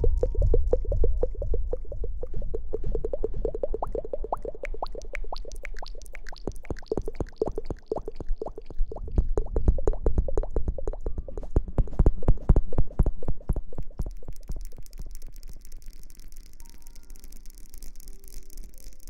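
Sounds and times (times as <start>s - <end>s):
wet squelching and plopping: 0.1s - 11.1s, 13.4s - 19.0s.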